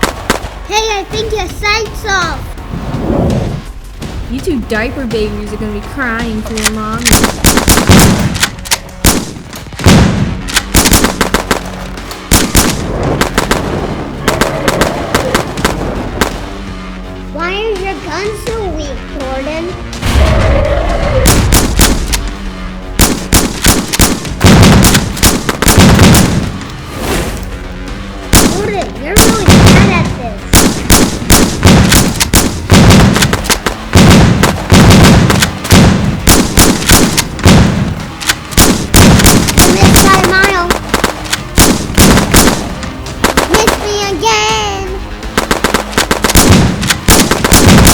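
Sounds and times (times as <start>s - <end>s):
rapid gunshots with deep boom: 0.0s - 17.2s, 17.8s - 47.9s
toy blaster shots: 38.6s - 42.6s, 43.3s - 44.2s.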